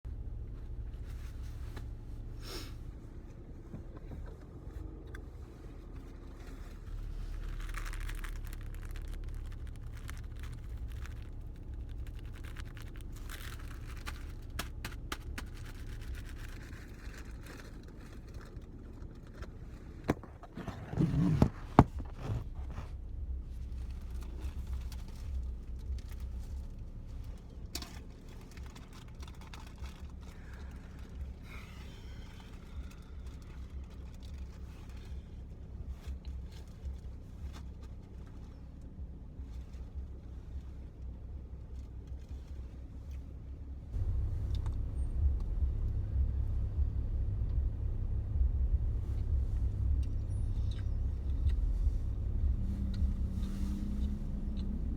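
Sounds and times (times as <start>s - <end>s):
car cabin hum: 0.1s - 54.9s
scraping and rustling handling noises: 0.6s - 47.5s, 49.0s - 54.9s
loud bumps: 20.0s - 23.7s, 44.0s - 53.7s.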